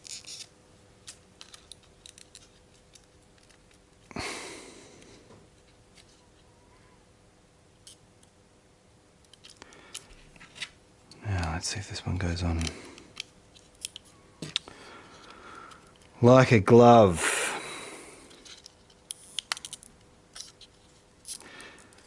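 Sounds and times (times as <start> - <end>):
parts clicking and tapping: 12.6 - 16.1.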